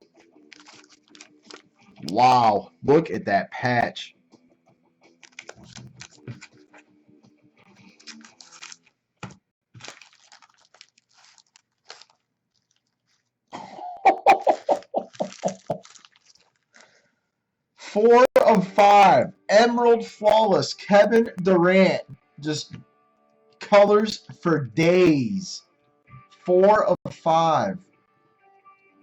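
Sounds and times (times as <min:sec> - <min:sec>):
trading cards and packaging rustling: 0:00.0 - 0:02.5, 0:05.1 - 0:06.9, 0:07.6 - 0:13.4, 0:14.3 - 0:17.0.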